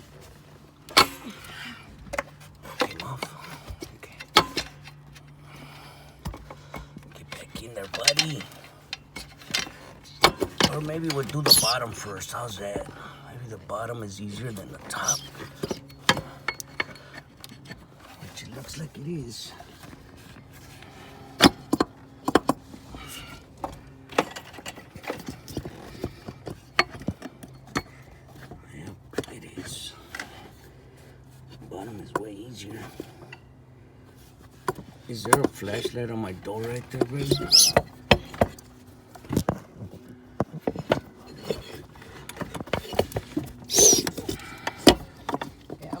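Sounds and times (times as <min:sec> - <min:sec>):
hands clicking and knocking parts: 0:00.8 - 0:11.8, 0:36.6 - 0:46.0
scraping rush and squeak: 0:09.8 - 0:13.2, 0:14.5 - 0:16.0, 0:36.6 - 0:38.0, 0:41.2 - 0:44.7.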